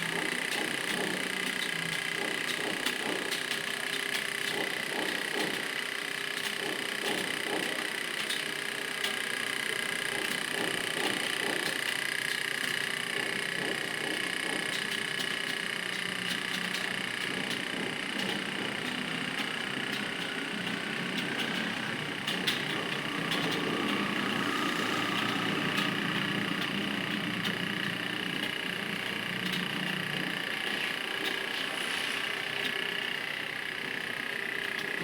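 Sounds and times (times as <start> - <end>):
steady background hum: 0.0 - 35.0.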